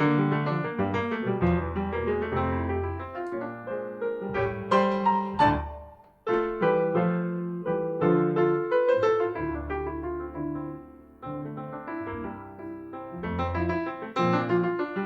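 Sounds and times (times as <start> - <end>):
jazz piano: 0.0 - 15.0.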